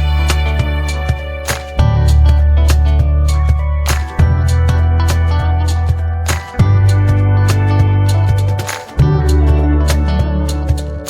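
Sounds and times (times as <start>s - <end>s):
music with beat and bass: 0.0s - 11.0s.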